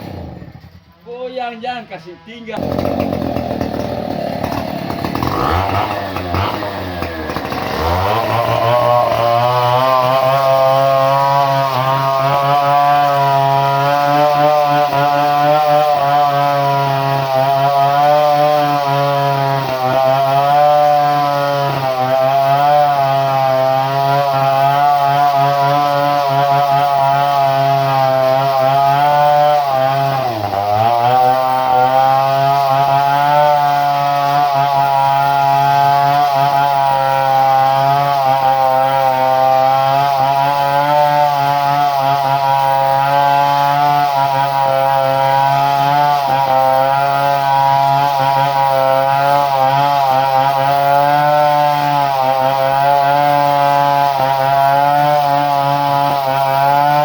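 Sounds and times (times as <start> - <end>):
chainsaw engine running: 0.0 - 57.0.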